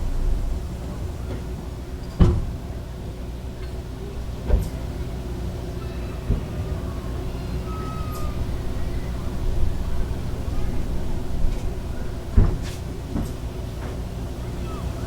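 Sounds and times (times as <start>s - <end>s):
steady low rumble: 0.0s - 5.4s, 8.3s - 14.6s.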